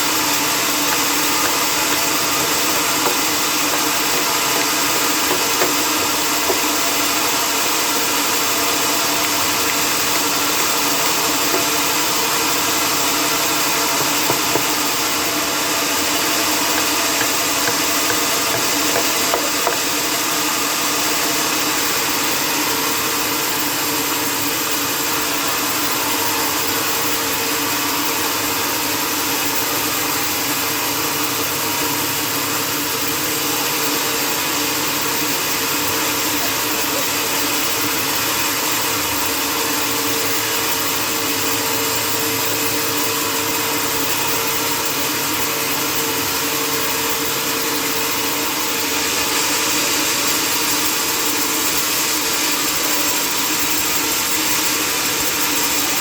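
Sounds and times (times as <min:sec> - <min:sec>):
sawmill machinery humming: 0:00.0 - 0:56.0.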